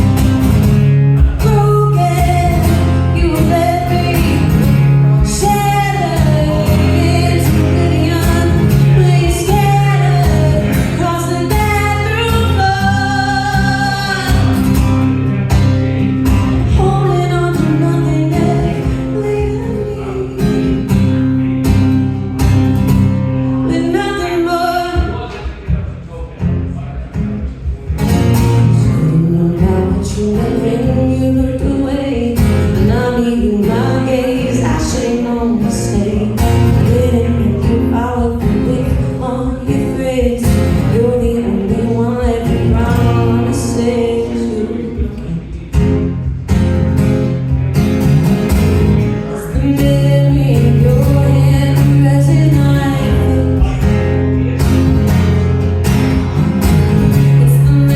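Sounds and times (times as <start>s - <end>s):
acoustic guitar: 0.0s - 57.9s
woman singing: 1.2s - 14.9s, 16.4s - 21.5s, 23.6s - 25.4s, 28.7s - 45.4s, 49.3s - 53.9s, 57.1s - 57.9s.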